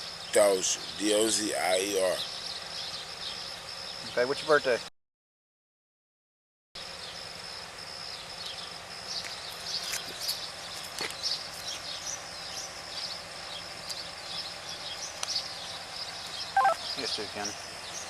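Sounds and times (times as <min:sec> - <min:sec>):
high insect drone: 0:00.0 - 0:04.8, 0:06.8 - 0:18.0
short falling chirps: 0:16.5 - 0:17.0.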